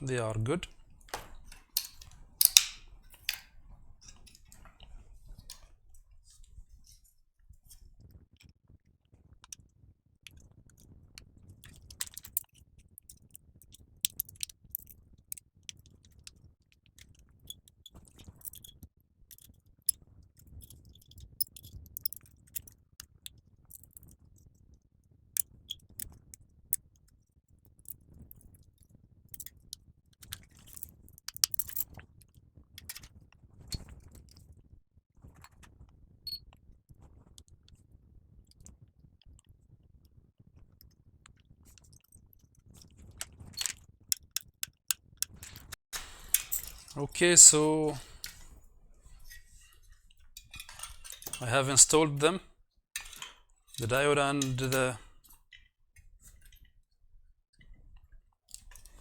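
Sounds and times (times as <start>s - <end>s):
electronic parts being handled: 0.1s - 4.5s, 14.1s - 15.0s, 20.6s - 22.7s, 30.6s - 31.8s
hand tools clicking and tapping: 0.6s - 4.7s, 14.1s - 14.9s, 21.4s - 22.7s, 30.7s - 31.8s, 43.6s - 47.0s.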